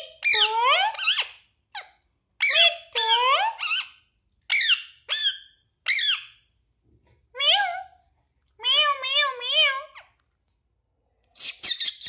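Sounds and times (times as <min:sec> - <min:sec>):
parrot chirping and squawking: 0:00.0 - 0:06.4, 0:08.6 - 0:10.2, 0:11.4 - 0:12.0.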